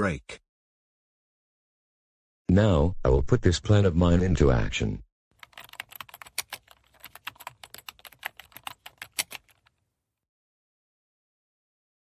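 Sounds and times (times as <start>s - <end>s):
typing on computer keyboard: 5.4s - 9.8s.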